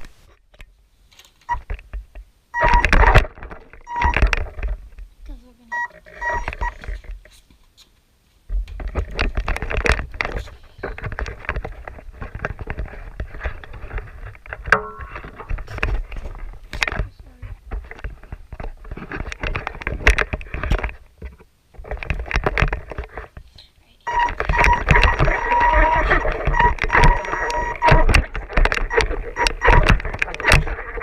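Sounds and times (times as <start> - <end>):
short electronic beeps: 2.6 - 3.2, 3.8 - 4.2, 5.7 - 6.8, 24.1 - 28.2, 28.8 - 30.7
rc car rattling: 24.1 - 31.0.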